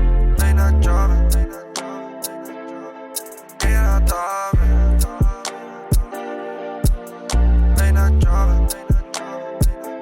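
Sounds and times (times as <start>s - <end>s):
mellow beat with plucked chords: 0.0s - 10.0s
deep bass hits: 4.6s - 5.1s.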